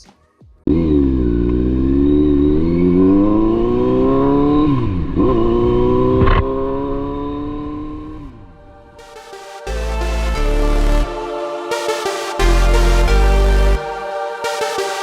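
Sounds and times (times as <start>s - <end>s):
motorcycle engine accelerating: 0.7s - 8.4s.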